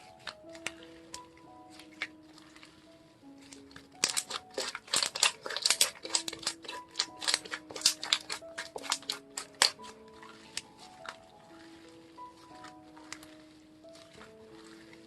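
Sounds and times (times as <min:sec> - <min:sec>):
slime clicking and popping: 0:03.4 - 0:11.3.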